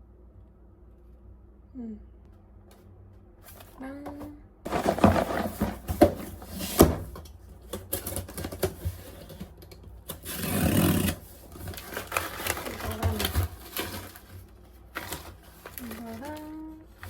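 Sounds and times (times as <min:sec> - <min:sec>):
rustling rush: 0:04.7 - 0:06.6.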